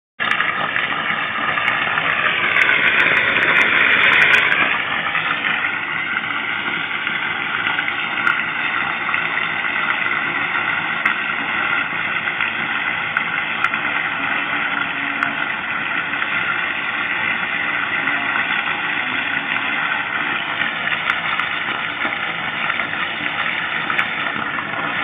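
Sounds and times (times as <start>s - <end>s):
rainwater pouring from drainpipe: 0.2s - 25.0s.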